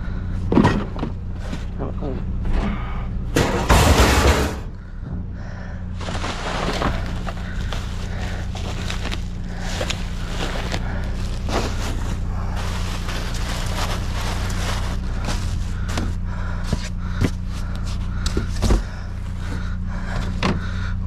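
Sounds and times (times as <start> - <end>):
steady low hum: 0.0 - 21.0
junk crashing in metal dumpster: 3.3 - 4.8
rustling and clatter of rummaging: 6.0 - 20.8.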